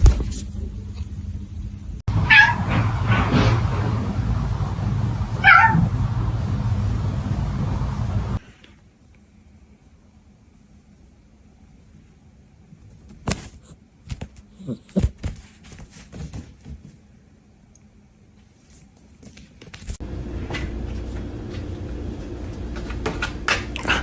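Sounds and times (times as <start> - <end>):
steady low hum: 0.0 - 2.0, 19.8 - 24.0.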